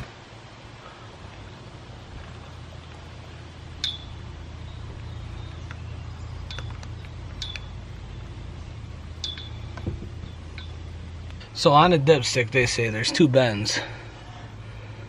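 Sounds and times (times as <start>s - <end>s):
steady low hum: 0.0s - 15.0s
sharp light ringing clicks: 3.8s - 4.2s, 5.0s - 8.3s, 9.1s - 9.9s, 10.5s - 11.5s.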